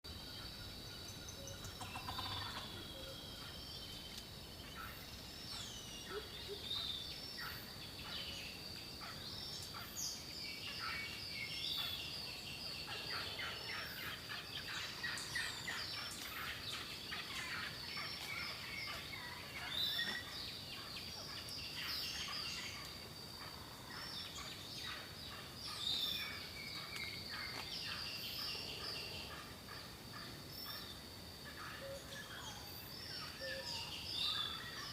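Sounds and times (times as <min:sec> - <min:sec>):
turkeys clucking: 0:01.8 - 0:02.9.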